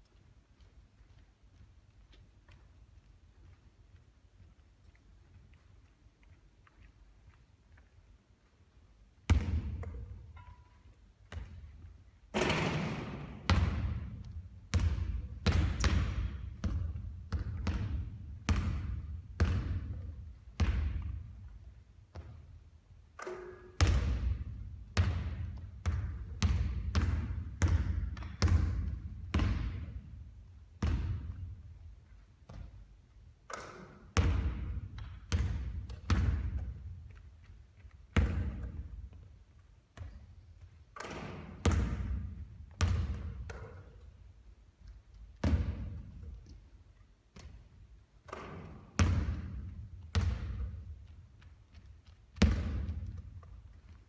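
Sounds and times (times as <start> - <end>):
basketball bouncing on court floor: 9.3 - 10.6, 11.2 - 22.6, 23.2 - 39.3, 39.9 - 44.2, 45.4 - 46.4, 47.3 - 54.0.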